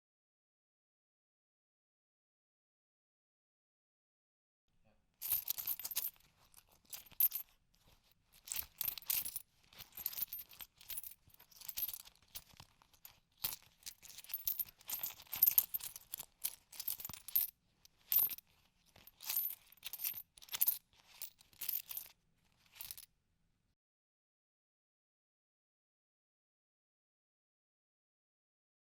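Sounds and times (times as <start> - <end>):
coins jingling: 5.2 - 7.6, 8.4 - 23.0.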